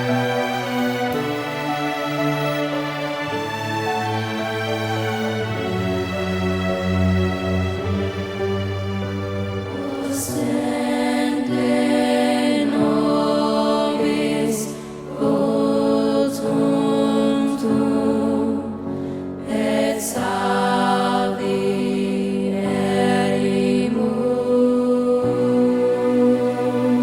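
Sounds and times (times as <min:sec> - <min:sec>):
voices singing sacred song: 0:09.6 - 0:27.0.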